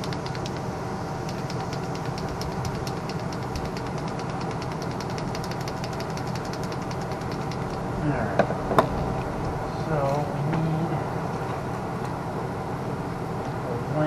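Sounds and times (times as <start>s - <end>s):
fast even ticking: 0.0s - 8.0s
machine humming: 0.0s - 14.0s.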